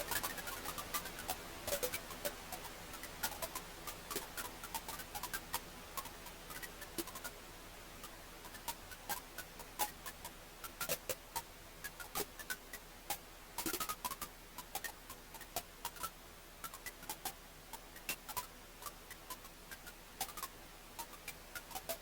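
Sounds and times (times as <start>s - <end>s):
faint steady hiss: 0.0s - 22.0s.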